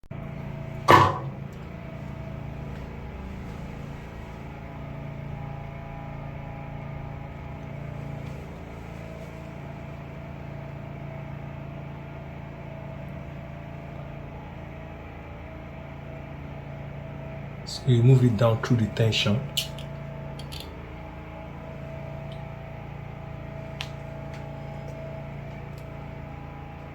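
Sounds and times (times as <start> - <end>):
steady mechanical hum: 0.0 - 26.9
loud sharp knock: 0.9 - 1.4.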